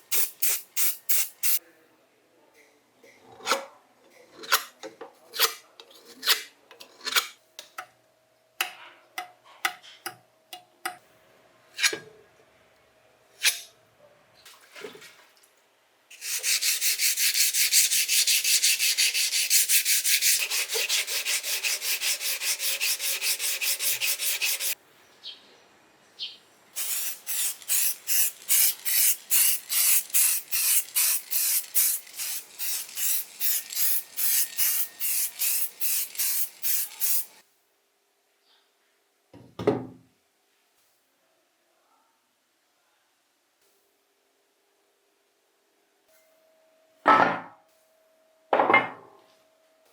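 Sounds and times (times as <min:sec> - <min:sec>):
hand sanding metal: 0:16.1 - 0:24.8.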